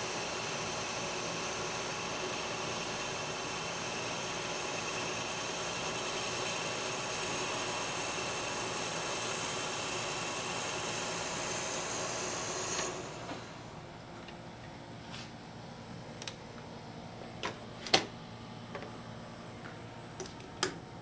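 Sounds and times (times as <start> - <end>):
metal lathe running: 0.0 - 13.7.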